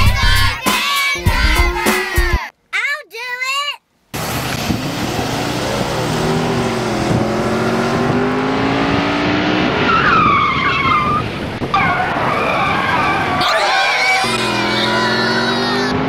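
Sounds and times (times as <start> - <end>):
car engine revving: 4.2 - 16.0
tyres squealing: 9.8 - 16.0.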